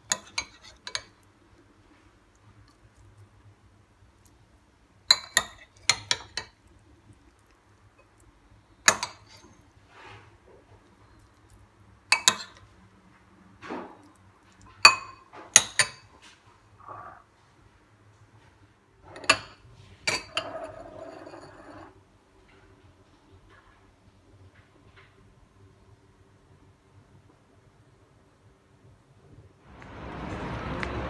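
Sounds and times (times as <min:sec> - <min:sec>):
dishes and cutlery clinking: 0:00.0 - 0:01.2, 0:19.1 - 0:22.0.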